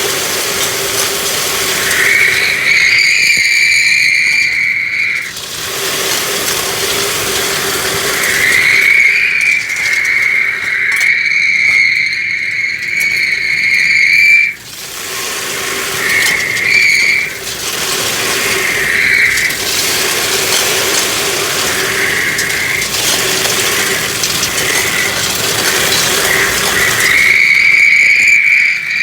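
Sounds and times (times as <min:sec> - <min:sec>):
high-pitched whistle: 0:01.9 - 0:05.3, 0:11.0 - 0:14.6.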